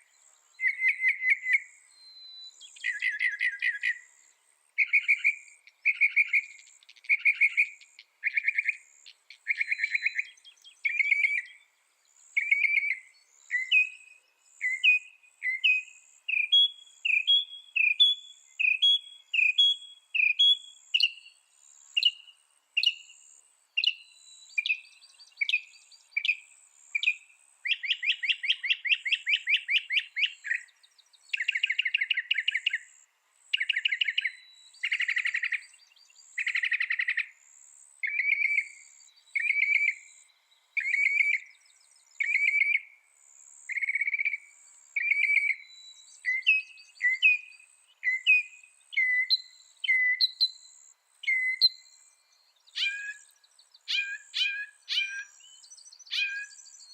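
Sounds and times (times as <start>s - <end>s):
mockingbird singing: 0.6s - 4.2s, 4.8s - 11.7s, 12.4s - 21.3s, 45.0s - 56.9s
faint high chirping: 43.6s - 56.9s.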